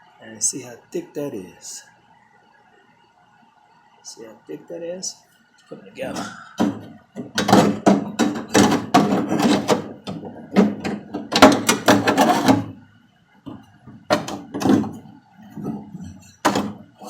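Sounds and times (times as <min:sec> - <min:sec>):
sheet steel clanking and scraping: 0:06.6 - 0:12.8, 0:13.5 - 0:16.8.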